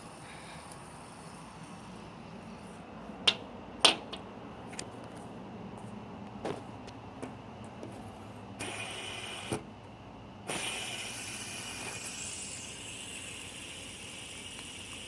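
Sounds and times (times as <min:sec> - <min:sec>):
fidget spinner bearing whirring: 0:00.0 - 0:02.9, 0:10.4 - 0:15.0.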